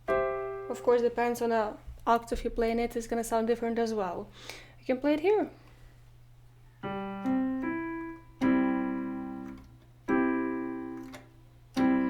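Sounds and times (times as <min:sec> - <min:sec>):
piano chord ringing: 0:00.0 - 0:01.4, 0:06.8 - 0:12.0.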